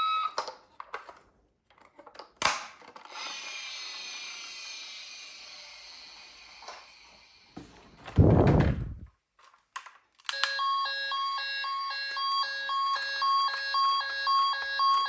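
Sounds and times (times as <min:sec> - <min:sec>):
toy car wheels whirring: 0:03.0 - 0:07.6.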